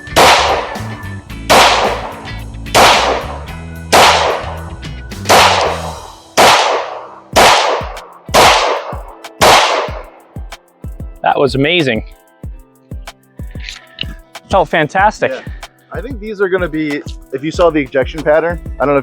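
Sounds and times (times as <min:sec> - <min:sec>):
pistol shots: 0:00.0 - 0:00.9, 0:01.5 - 0:04.6, 0:05.3 - 0:10.2
background music: 0:00.0 - 0:19.0.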